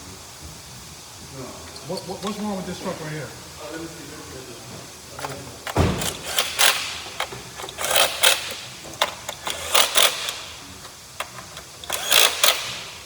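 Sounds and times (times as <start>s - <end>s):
loud thump: 5.7s - 6.5s.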